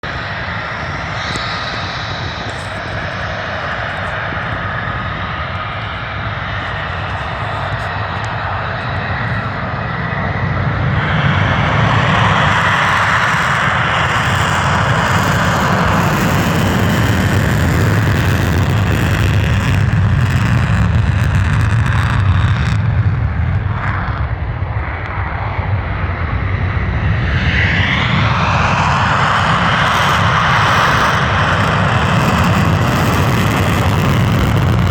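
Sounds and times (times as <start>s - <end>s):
jet engines taking off: 0.0s - 34.9s
jet whine rising in pitch: 11.9s - 22.9s, 27.0s - 34.9s.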